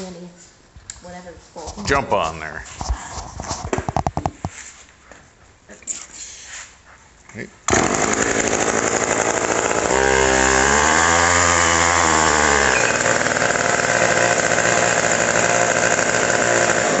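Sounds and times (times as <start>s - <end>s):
chainsaw engine revving: 7.7s - 17.0s.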